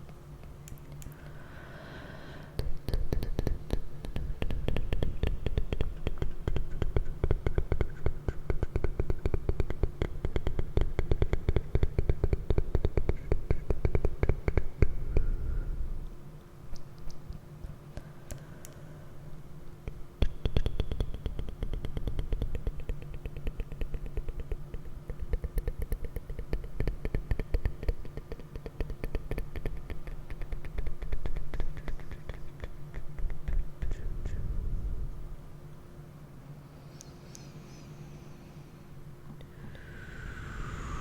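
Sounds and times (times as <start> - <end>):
low steady hum: 0.0 - 41.0
light tapping and rubbing on object: 2.6 - 14.9.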